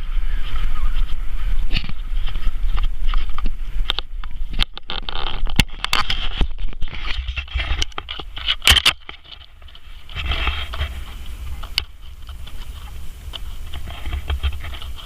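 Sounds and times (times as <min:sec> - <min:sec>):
scraping noise: 0:00.0 - 0:15.0.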